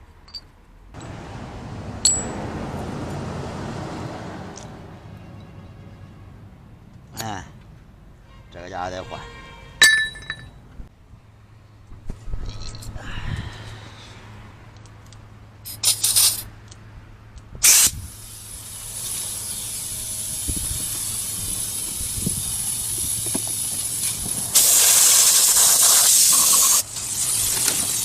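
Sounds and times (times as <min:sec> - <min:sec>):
short bursts of spray: 0:15.6 - 0:16.5, 0:17.6 - 0:28.0
hissing spray with whistle: 0:23.9 - 0:27.6.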